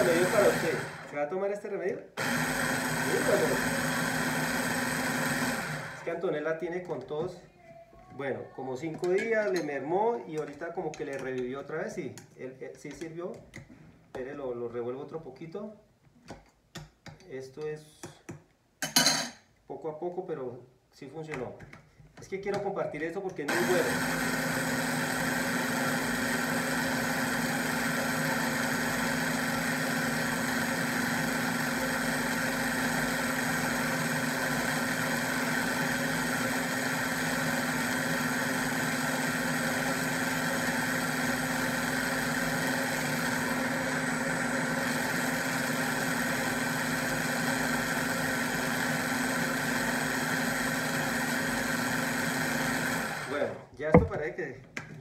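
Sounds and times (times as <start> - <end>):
kitchen appliance motor whirring: 0.0 - 1.2, 2.2 - 6.1, 23.5 - 54.1.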